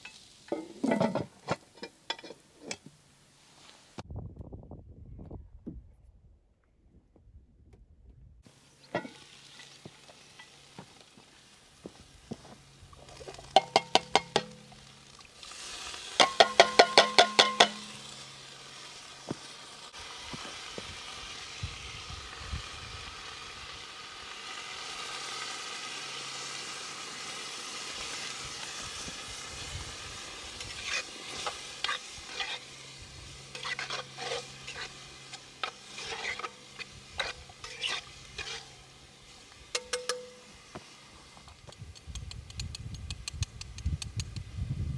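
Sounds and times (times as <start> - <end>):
metal utensil clinking on pan: 0.0 - 2.9, 8.8 - 9.7, 13.4 - 15.0, 16.2 - 18.4, 30.7 - 32.7, 33.4 - 38.9, 39.7 - 40.6
food sizzling in a pan: 0.0 - 4.0, 8.5 - 41.5.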